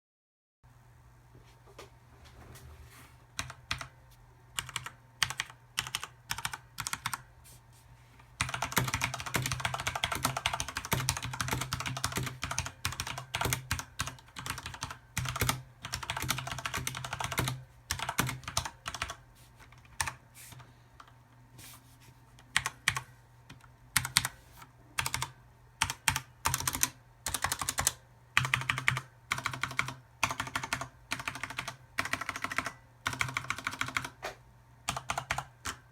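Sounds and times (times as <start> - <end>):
mechanical keyboard typing: 3.4 - 4.0, 4.6 - 7.3, 8.4 - 21.2, 22.5 - 24.4, 25.0 - 34.2, 34.9 - 35.9.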